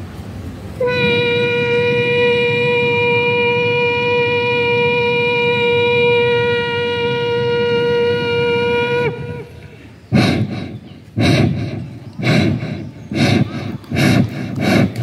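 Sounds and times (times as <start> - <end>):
man imitating train horn: 0.8 - 10.8
burst of breath: 9.6 - 15.0.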